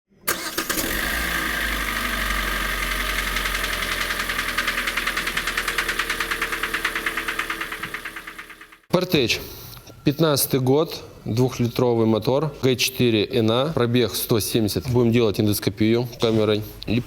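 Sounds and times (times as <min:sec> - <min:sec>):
car engine knocking: 0:01.6 - 0:08.9.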